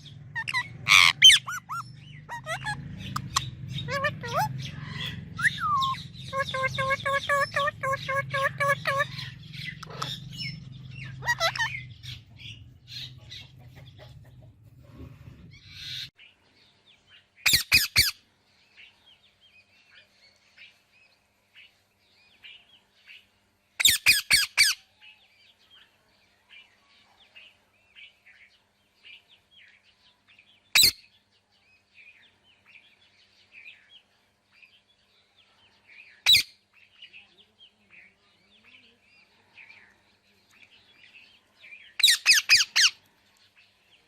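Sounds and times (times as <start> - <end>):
parrot squawking: 0.3 - 12.3, 23.8 - 24.8, 30.8 - 31.0, 42.0 - 43.0.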